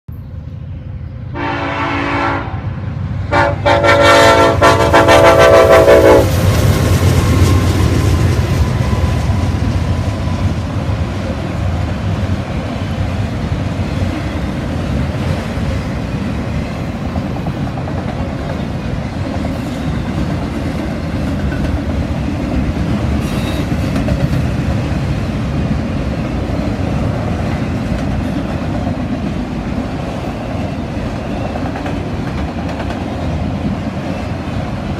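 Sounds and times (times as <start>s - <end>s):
train wheels rumbling on track: 0.1s - 34.9s
locomotive horn blasts: 1.3s - 2.7s, 3.3s - 6.4s.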